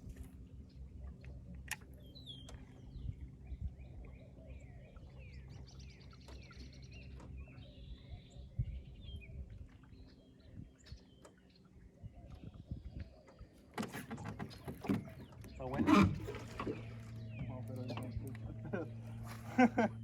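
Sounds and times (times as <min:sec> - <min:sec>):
songbirds chirping and trilling: 0:00.0 - 0:20.0
low steady hum: 0:14.9 - 0:20.0.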